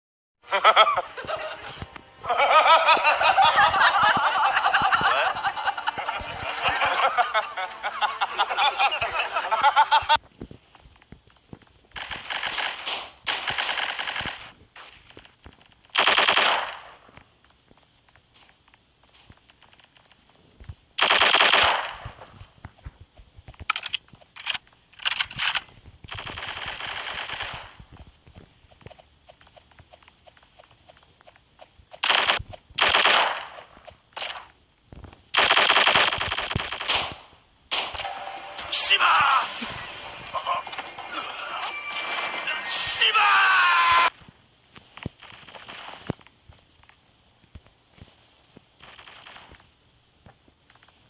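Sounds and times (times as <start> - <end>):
high-pitched laughter: 0.4 - 10.2, 38.9 - 43.2
automatic gunfire: 12.0 - 14.6, 16.0 - 17.0, 21.0 - 22.2, 25.0 - 27.8, 32.0 - 34.4, 35.3 - 38.0.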